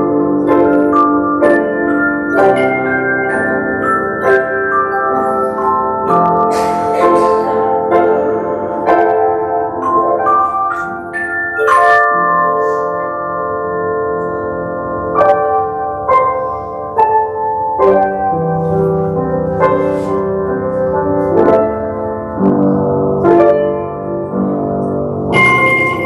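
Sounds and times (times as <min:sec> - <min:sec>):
handbells ringing chords: 0:00.0 - 0:16.5, 0:25.3 - 0:26.0.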